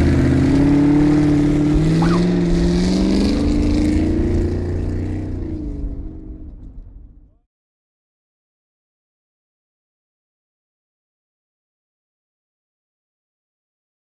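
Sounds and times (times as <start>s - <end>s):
truck engine running: 0.0s - 7.2s.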